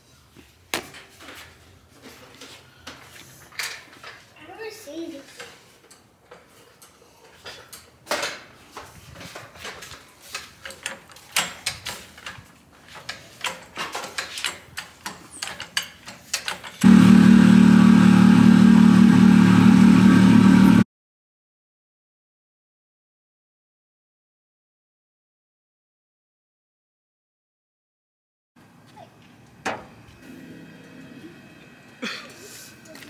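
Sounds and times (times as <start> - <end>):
loud engine-like drone: 16.8 - 20.8, 30.2 - 32.0.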